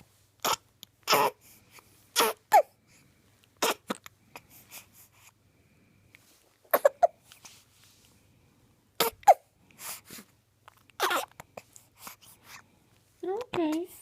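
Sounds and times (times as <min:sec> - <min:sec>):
baby hiccuping: 0:00.4 - 0:01.4, 0:02.2 - 0:02.8, 0:03.6 - 0:04.1, 0:06.7 - 0:07.2, 0:09.0 - 0:09.5, 0:11.0 - 0:11.4
soft baby breaths: 0:01.3 - 0:03.4, 0:04.2 - 0:08.6, 0:09.3 - 0:10.5, 0:11.2 - 0:14.0.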